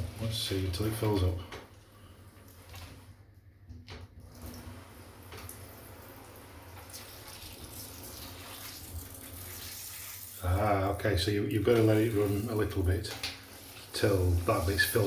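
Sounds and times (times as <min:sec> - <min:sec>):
shower spraying into bath: 0:04.3 - 0:10.9, 0:11.5 - 0:15.0.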